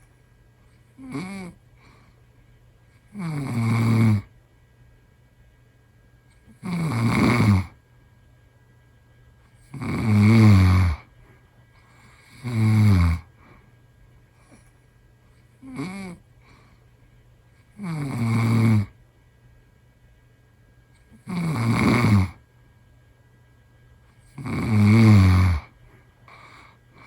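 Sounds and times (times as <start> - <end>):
man snoring: 1.0 - 1.6, 3.1 - 4.3, 6.5 - 7.8, 9.7 - 11.1, 12.1 - 13.3, 15.6 - 16.2, 17.8 - 19.0, 21.2 - 22.4, 24.3 - 26.8.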